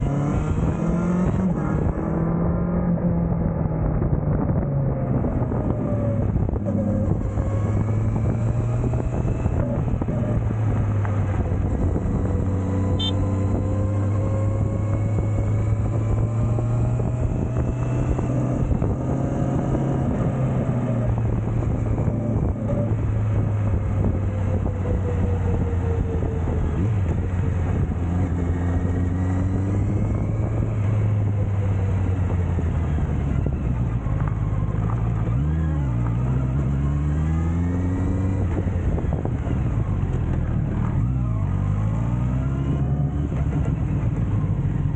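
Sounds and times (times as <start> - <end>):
motorcycle engine running: 6.2 - 17.7.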